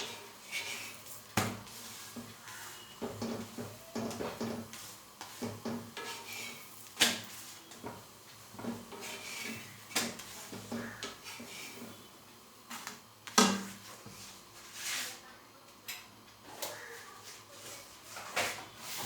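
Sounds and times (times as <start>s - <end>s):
frying sizzle: 0.0s - 14.8s.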